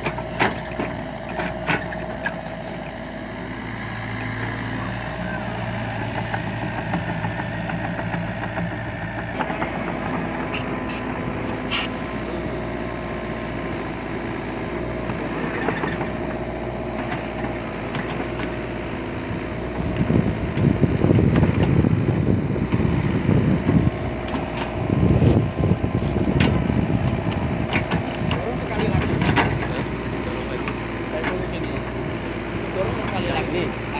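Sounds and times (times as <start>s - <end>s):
diesel engine running: 0.0s - 33.9s
loud rough noise: 9.2s - 12.8s.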